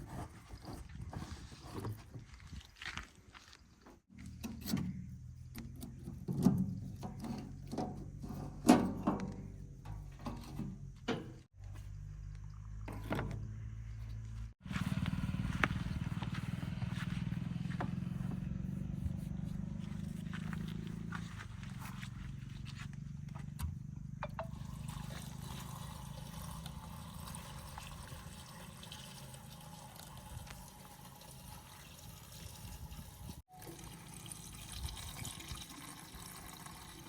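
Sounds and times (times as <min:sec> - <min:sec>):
diesel engine running: 0:09.3 - 0:27.2.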